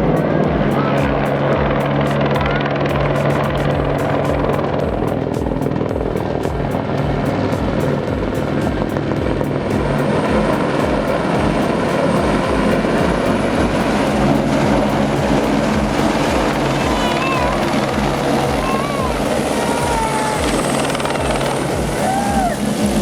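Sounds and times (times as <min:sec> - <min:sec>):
helicopter rotor blades chopping: 0:00.0 - 0:23.0.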